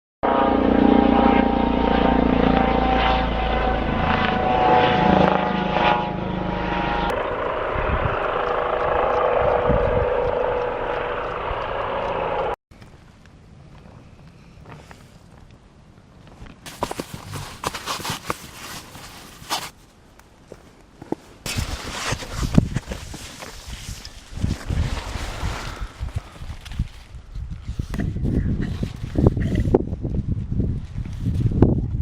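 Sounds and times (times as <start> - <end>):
helicopter rotor and engine drone: 0.2 - 12.6.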